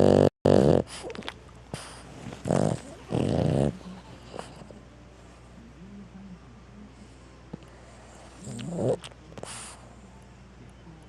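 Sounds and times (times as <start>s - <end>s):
dog snoring: 0.0s - 4.8s, 7.5s - 10.1s.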